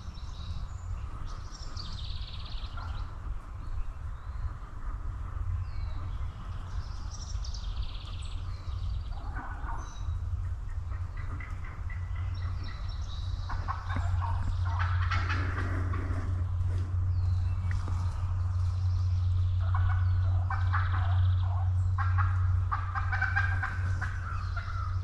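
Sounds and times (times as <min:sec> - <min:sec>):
songbird chirps: 0:00.0 - 0:25.0
steady low rumble: 0:00.0 - 0:25.0
wild turkeys calling: 0:02.6 - 0:03.2, 0:08.5 - 0:16.9, 0:17.5 - 0:25.0
turkey rattling calls: 0:09.1 - 0:16.5, 0:17.5 - 0:25.0.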